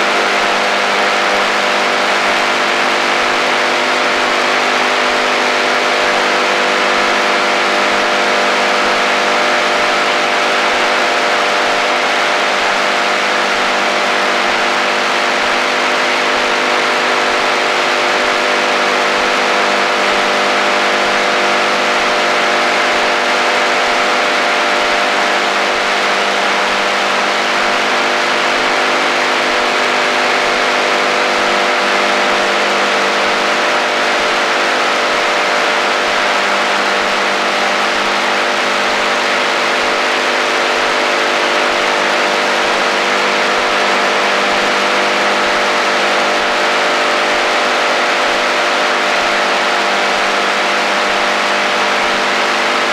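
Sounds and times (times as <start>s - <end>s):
droning radio tones: 0.0s - 3.4s
radio hiss: 0.0s - 3.4s.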